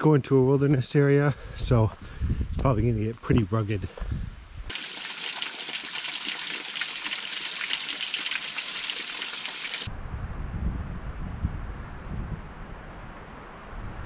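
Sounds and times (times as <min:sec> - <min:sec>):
wind rumble on microphone: 0:01.4 - 0:04.7, 0:09.9 - 0:14.0
rushing water hissing: 0:04.7 - 0:09.9.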